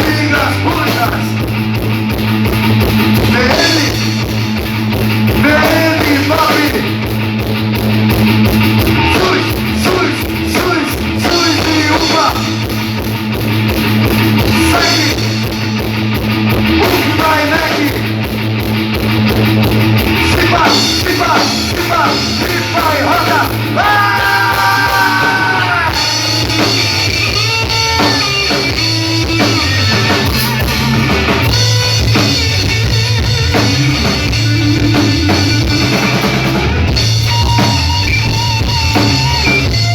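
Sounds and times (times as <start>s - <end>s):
drum kit beating: 0.0s - 39.9s
electric guitar: 0.0s - 39.9s
person singing: 5.4s - 7.0s, 9.0s - 12.6s, 14.6s - 15.4s, 20.2s - 26.8s.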